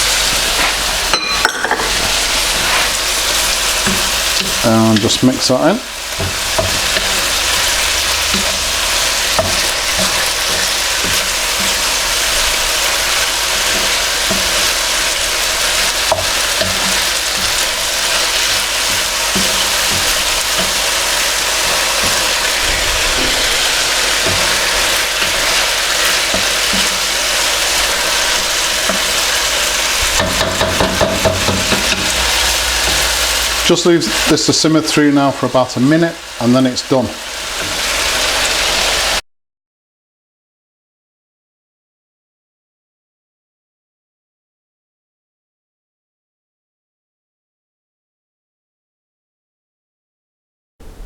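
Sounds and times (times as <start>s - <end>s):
food sizzling in a wok: 0.0s - 39.2s
quick stirring strokes: 1.9s - 4.7s.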